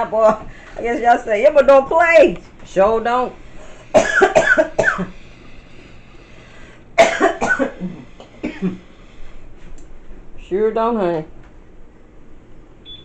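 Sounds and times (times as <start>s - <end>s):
person coughing: 3.9s - 5.2s, 7.0s - 8.9s.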